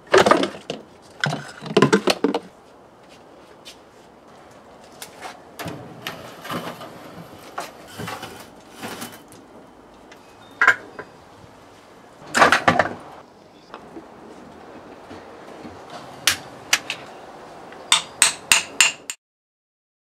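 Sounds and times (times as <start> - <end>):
metal tools clinking and knocking: 10.4 - 11.1.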